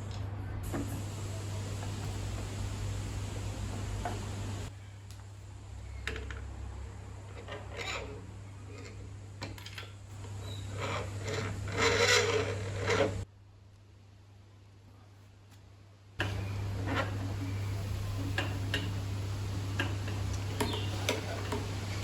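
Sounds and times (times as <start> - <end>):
steady low hum: 0.0 - 9.4
tools scraping metal parts: 7.3 - 13.2.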